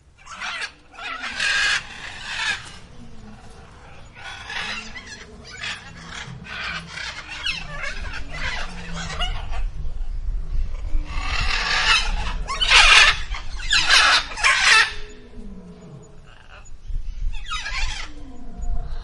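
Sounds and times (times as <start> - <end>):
harsh bird-like squawks: 0.2 - 9.7, 11.2 - 15.2, 17.4 - 18.2.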